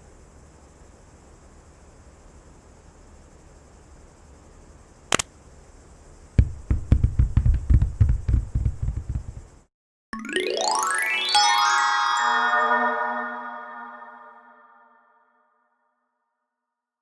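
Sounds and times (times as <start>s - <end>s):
rapid low thuds and knocks: 6.4s - 9.6s.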